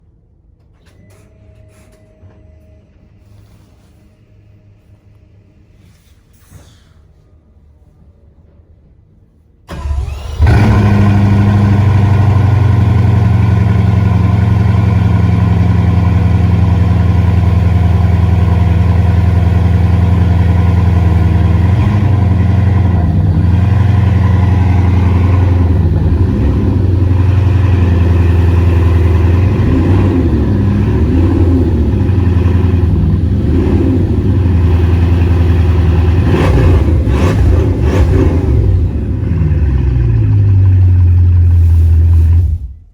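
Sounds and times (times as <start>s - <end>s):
car engine idling and blipped: 9.7s - 42.9s.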